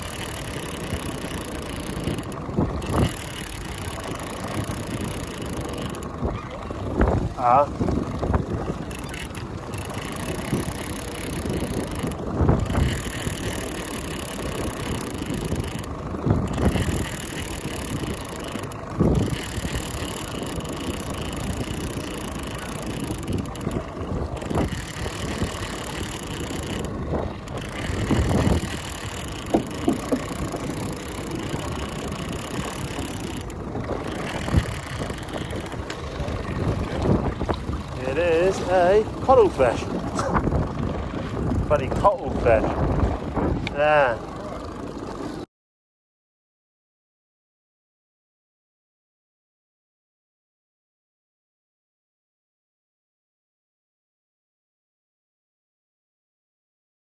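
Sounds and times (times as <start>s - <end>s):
wind gusting on microphone: 0.0s - 45.5s.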